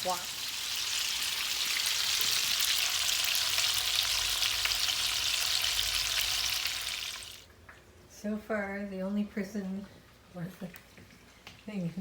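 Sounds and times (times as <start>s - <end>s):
bacon sizzling in a frying pan: 0.0s - 7.5s.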